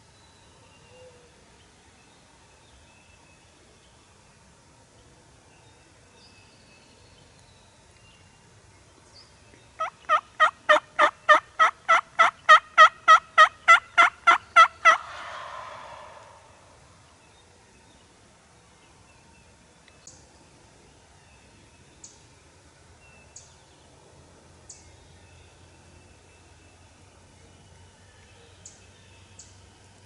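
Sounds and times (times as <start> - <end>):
turkey yelps: 9.8 - 16.5
rough raspy trailing sound: 14.9 - 16.8.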